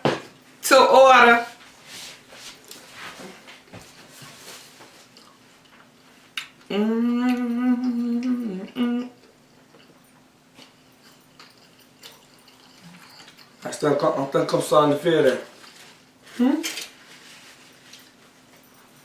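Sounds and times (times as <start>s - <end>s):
person humming with food: 6.6s - 9.3s, 16.3s - 16.8s.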